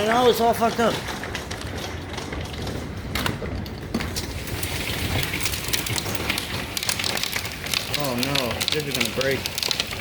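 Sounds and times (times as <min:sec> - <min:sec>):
hailstones striking hard surfaces: 0:00.0 - 0:10.0
rain hiss: 0:04.2 - 0:10.0.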